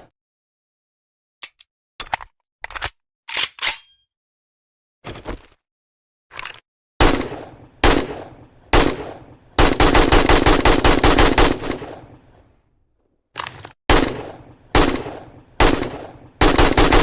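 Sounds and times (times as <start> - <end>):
single rifle shots: 7.0 - 10.1, 11.0 - 12.2, 13.9 - 17.0
automatic gunfire burst: 8.8 - 12.0, 13.9 - 17.0.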